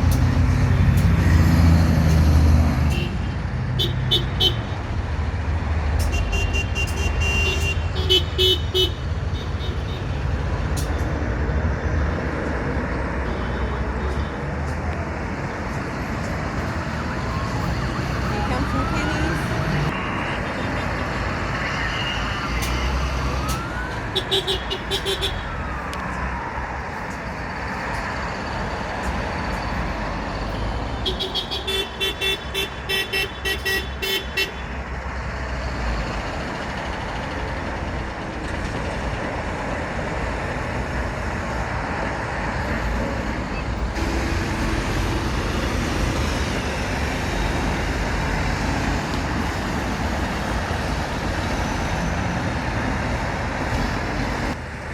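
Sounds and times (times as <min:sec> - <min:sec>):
passing traffic: 0:00.0 - 0:54.9
siren wail: 0:15.9 - 0:29.8
truck horn toots: 0:31.0 - 0:34.8.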